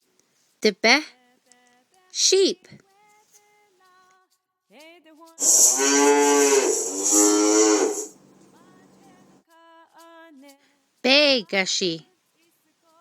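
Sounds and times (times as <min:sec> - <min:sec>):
cow mooing: 0:05.4 - 0:08.1.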